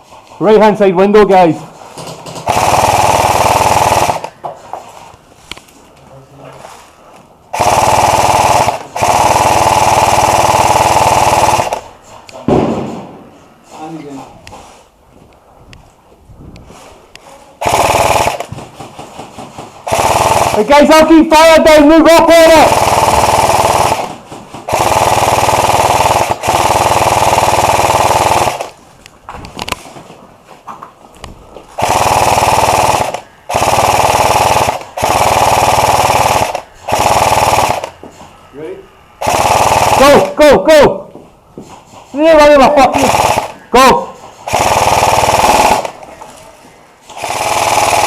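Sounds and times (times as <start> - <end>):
airsoft gun full-auto rattle: 1.9 - 4.4, 7.5 - 11.9, 17.6 - 21.1, 22.4 - 28.8, 31.8 - 38.0, 39.2 - 40.4, 42.9 - 43.6, 44.4 - 46.0, 47.1 - 48.0.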